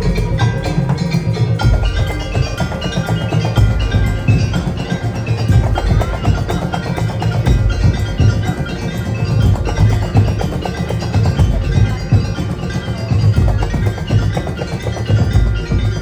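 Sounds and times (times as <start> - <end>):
gamelan ensemble playing: 0.0 - 16.0.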